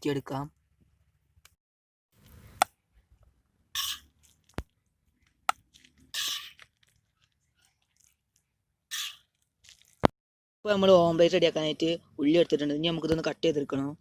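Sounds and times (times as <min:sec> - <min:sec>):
metal spoon scraping a pan: 0:03.8 - 0:04.1, 0:06.1 - 0:06.6, 0:08.9 - 0:09.3.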